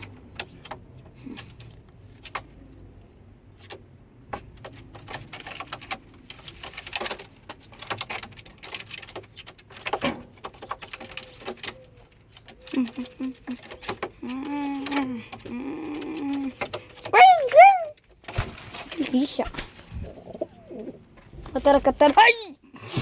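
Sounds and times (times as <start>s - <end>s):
sharp clicks taps and knocks: 0.0s - 2.7s.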